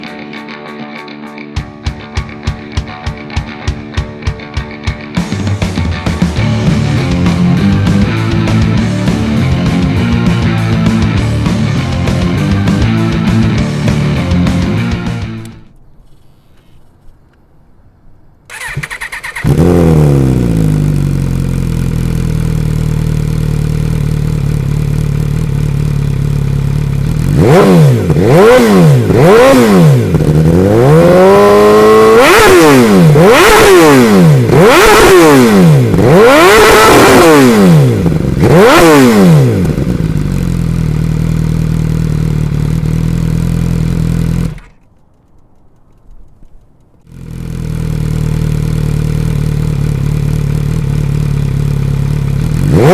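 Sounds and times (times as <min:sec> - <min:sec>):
motorcycle engine idling and revving: 0:01.6 - 0:15.8, 0:18.5 - 0:52.9
starter cranking: 0:18.5 - 0:22.2, 0:35.9 - 0:50.9.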